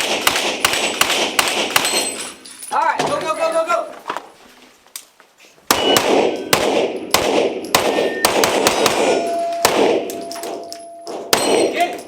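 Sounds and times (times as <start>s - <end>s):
echoing gunshots: 0.0s - 2.2s, 5.7s - 11.9s
steel targets ringing: 5.8s - 12.0s.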